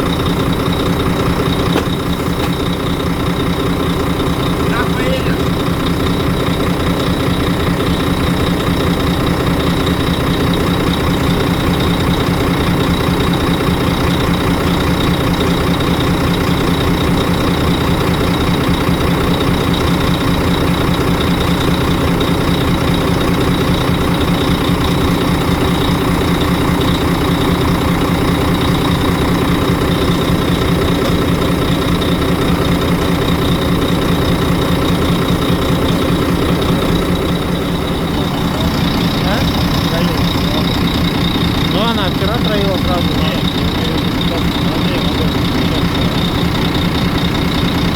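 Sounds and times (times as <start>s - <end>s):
diesel truck engine idling: 0.0s - 47.9s
engine knock: 0.0s - 47.9s.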